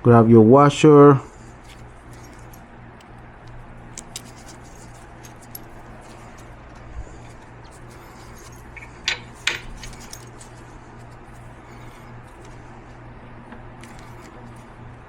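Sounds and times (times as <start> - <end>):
metal hardware clinking: 3.9 - 12.6.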